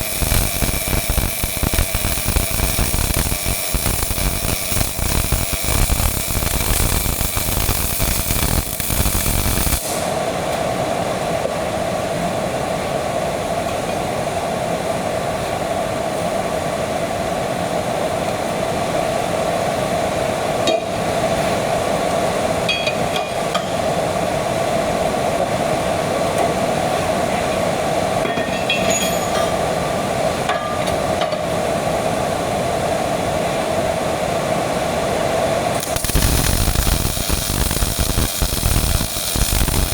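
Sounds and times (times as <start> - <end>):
welding arc crackle: 0.0 - 10.1, 35.7 - 39.9
welding hiss with hum: 0.0 - 10.7, 34.8 - 39.9.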